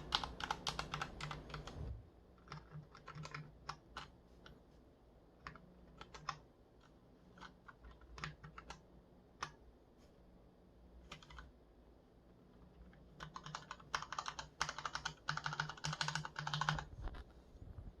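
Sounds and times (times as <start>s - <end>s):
mechanical keyboard typing: 0.0s - 1.8s, 2.4s - 4.6s, 5.4s - 6.4s, 7.3s - 8.8s, 11.1s - 11.5s, 12.8s - 16.9s.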